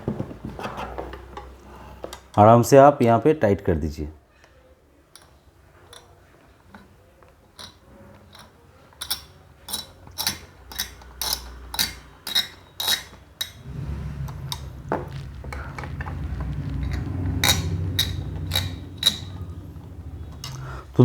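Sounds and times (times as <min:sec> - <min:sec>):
low steady hum: 0:13.5 - 0:21.0.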